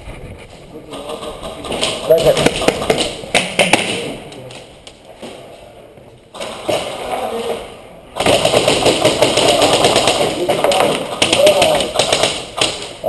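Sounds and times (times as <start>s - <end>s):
airsoft guns firing: 0.9s - 4.2s, 8.2s - 13.0s.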